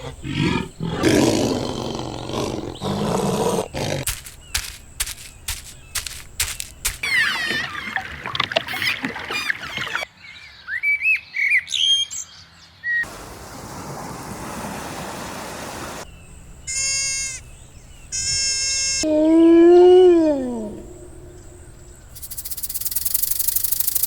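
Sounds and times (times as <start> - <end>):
animal chirping: 3.6 - 8.0, 22.2 - 24.0
gliding bird-like calls: 4.5 - 10.1, 22.2 - 24.0
animal hiss: 22.2 - 24.0.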